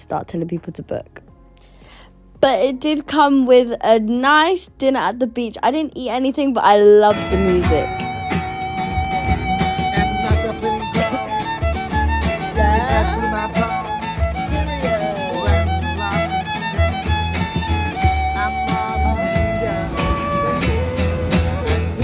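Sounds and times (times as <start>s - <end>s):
pulsing bass beat: 7.1s - 22.0s
gliding melody: 7.2s - 22.0s.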